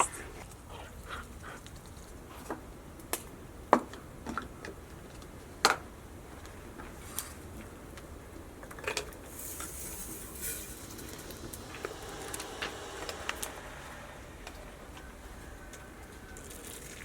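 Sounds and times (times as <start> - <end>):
short hiss: 9.4 - 17.0.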